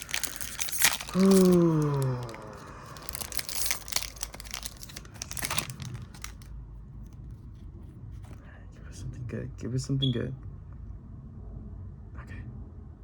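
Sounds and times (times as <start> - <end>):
foil wrapper crinkling and tearing: 0.0 - 6.5.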